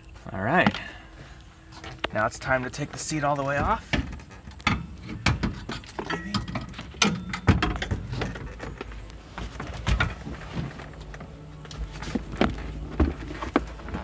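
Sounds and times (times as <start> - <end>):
van seat knocks and clunks: 9.4 - 11.0, 11.9 - 14.0.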